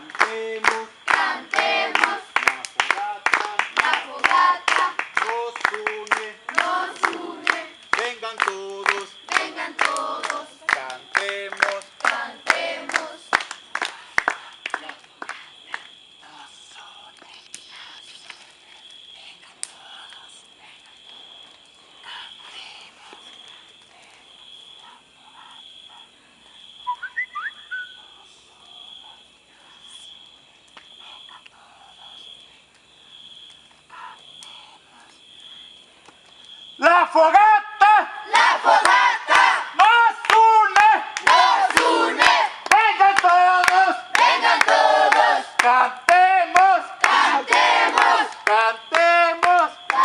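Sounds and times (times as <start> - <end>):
sharp hand claps: 0.0 - 15.9, 38.4 - 50.0
night insects trilling: 0.0 - 50.0
whistled chirps: 26.8 - 28.2
group shouting a cheer in unison: 38.2 - 43.0, 43.6 - 45.6, 46.6 - 48.4.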